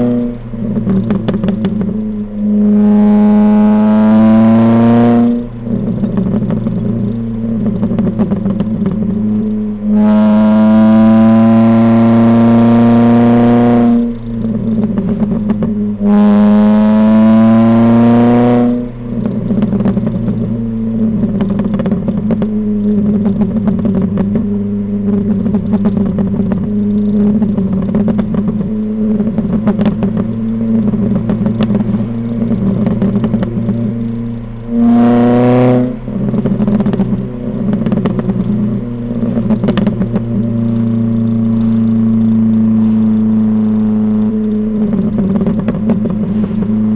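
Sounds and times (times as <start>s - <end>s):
car exhaust revving: 0.0s - 46.9s
exhaust crackling and popping: 0.0s - 46.9s.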